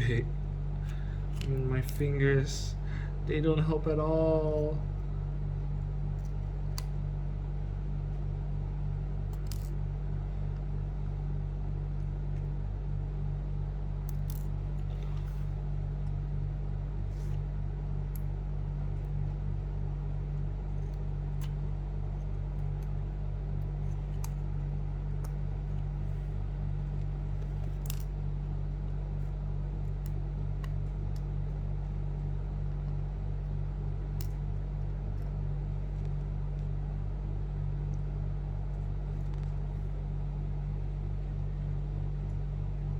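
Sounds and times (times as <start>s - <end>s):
steady low hum: 0.0s - 42.9s.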